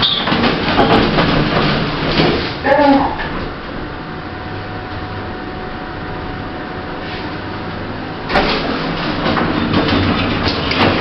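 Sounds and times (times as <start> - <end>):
sliding doors clattering open: 0.0 - 4.3, 6.9 - 11.0
lift humming with faint whine: 0.0 - 11.0.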